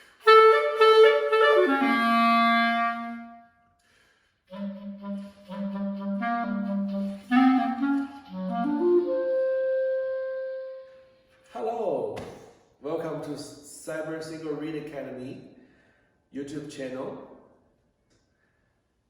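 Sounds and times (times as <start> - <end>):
solo clarinet playing: 0.0 - 3.5, 4.5 - 11.3.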